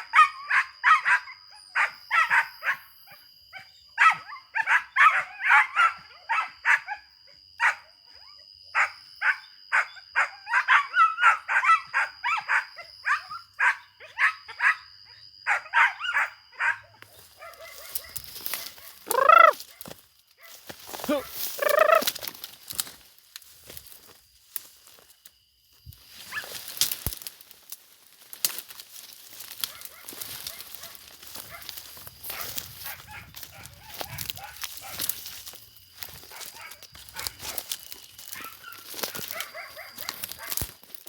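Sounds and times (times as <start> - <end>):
young dog barking: 4.0 - 7.0, 15.5 - 19.6, 21.1 - 22.0, 29.7 - 35.0, 36.3 - 37.7, 38.3 - 40.6.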